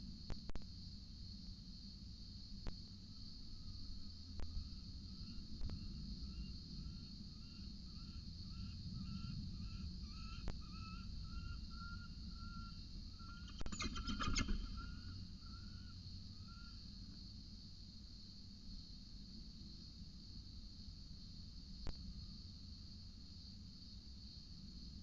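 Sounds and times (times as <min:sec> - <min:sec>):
cicada drone: 0:00.0 - 0:25.0
repeated bird call notes: 0:09.1 - 0:15.9.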